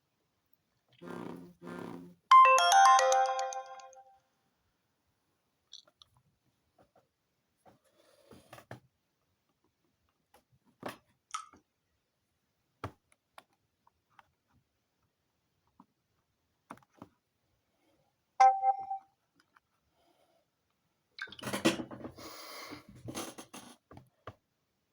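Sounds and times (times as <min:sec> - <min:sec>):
phone alarm tone: 0:02.3 - 0:04.0, 0:18.4 - 0:19.0.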